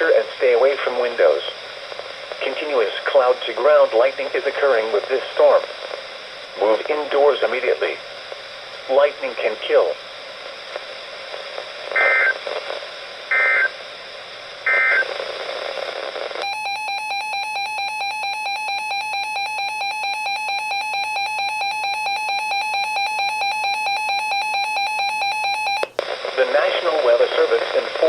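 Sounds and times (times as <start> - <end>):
warbling data bursts: 12.0 - 12.4, 13.3 - 13.7
rapid alarm beeps: 13.3 - 13.7, 16.4 - 25.8.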